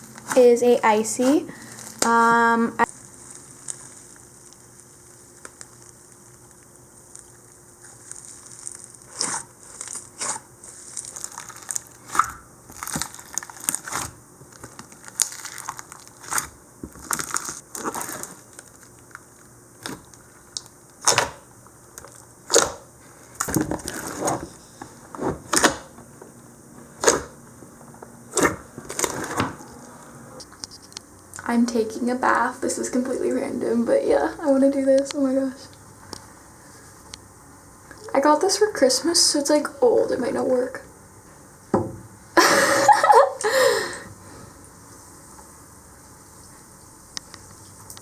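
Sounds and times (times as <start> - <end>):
slime crunching and crinkling: 0.0 - 25.9, 26.9 - 27.4, 28.3 - 29.8.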